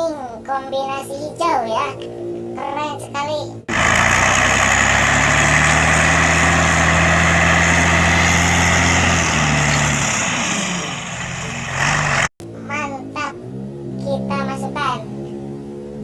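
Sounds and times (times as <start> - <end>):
truck engine running: 3.7 - 12.3.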